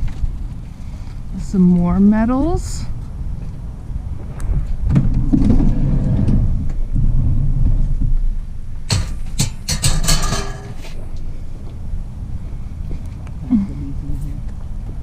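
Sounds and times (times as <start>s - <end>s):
low rumble: 0.2s - 15.0s
scrap metal clanking: 8.9s - 11.0s.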